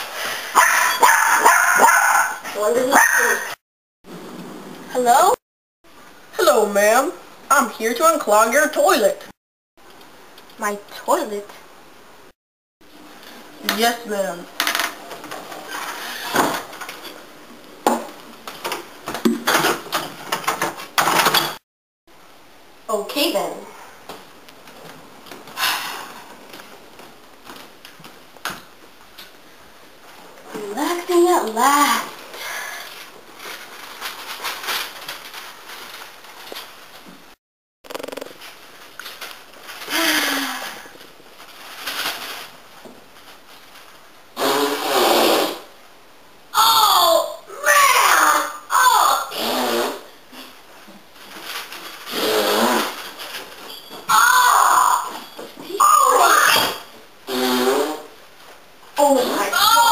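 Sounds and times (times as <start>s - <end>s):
hard objects knocking and clattering: 17.8s - 21.6s
person sighing: 39.9s - 40.9s.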